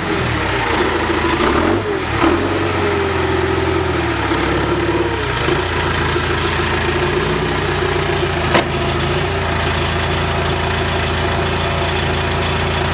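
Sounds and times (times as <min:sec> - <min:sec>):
diesel engine idling: 0:00.0 - 0:12.9
sharp clack: 0:08.2 - 0:09.3.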